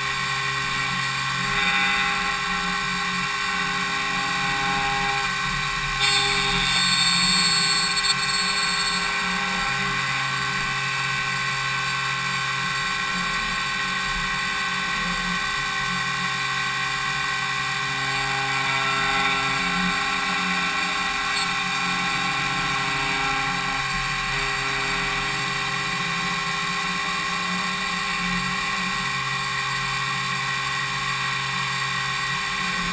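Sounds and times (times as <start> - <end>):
spindle and cutter whine: 0.2 - 32.9
machine running hum: 2.2 - 15.0, 16.6 - 27.0
high-pitched cutting sound: 6.0 - 9.6, 21.3 - 22.4.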